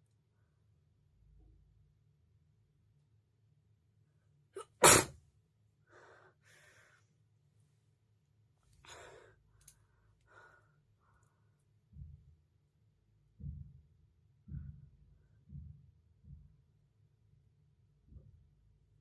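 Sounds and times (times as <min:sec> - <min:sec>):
woman sneezing: 0:04.6 - 0:05.1.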